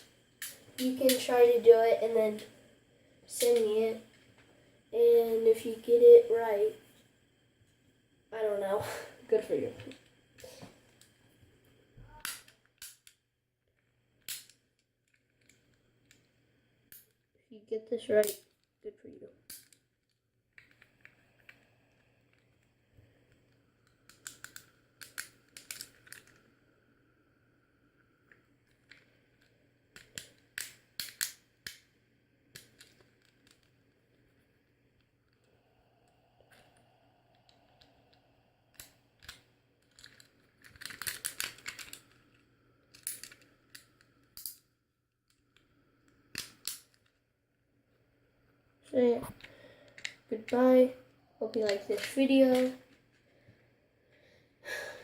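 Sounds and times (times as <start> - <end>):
fidget toy clicking: 0.0 - 1.4, 3.4 - 3.7, 23.8 - 26.4, 30.0 - 31.9, 51.4 - 52.8
plastic fidget toy clicks: 14.2 - 14.6, 18.1 - 18.6, 24.1 - 26.4, 30.0 - 31.9, 38.7 - 42.0, 51.5 - 52.8.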